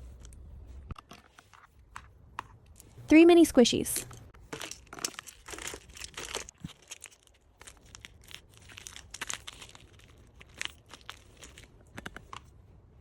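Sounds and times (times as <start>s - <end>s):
packaging crinkling and rustling: 4.5s - 12.4s.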